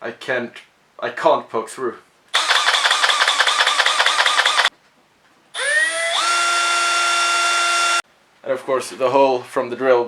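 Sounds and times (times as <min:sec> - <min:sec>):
drill motor whine: 0:02.4 - 0:04.7, 0:05.6 - 0:08.0
power drill rattling: 0:02.4 - 0:04.7, 0:05.6 - 0:08.0.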